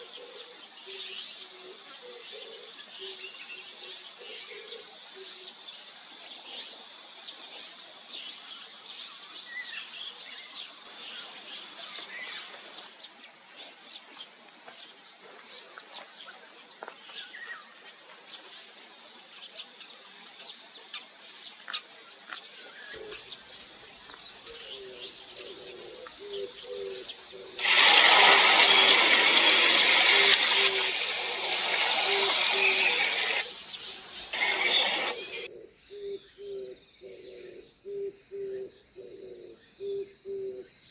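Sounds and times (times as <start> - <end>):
steady hiss: 23.3 - 35.9
small birds chirping: 24.2 - 40.9
dove cooing: 24.7 - 35.6
loud hissing rush: 26.5 - 35.5.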